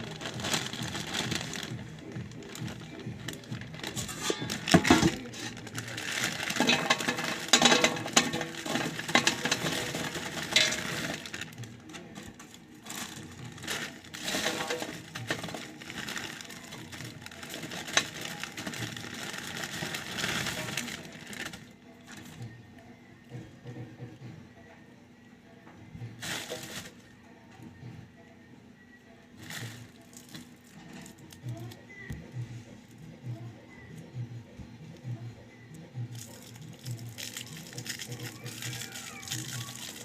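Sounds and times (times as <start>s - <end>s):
plastic wrappers crinkling: 0.0s - 22.5s, 26.2s - 27.1s, 29.4s - 31.7s, 36.1s - 40.0s.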